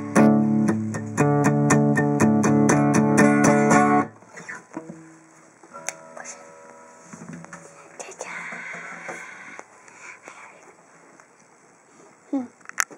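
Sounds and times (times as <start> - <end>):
acoustic guitar strumming: 0.0 - 9.3.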